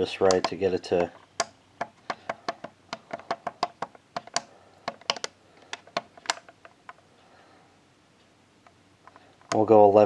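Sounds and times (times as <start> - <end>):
plastic buttons clicking: 0.3 - 6.5.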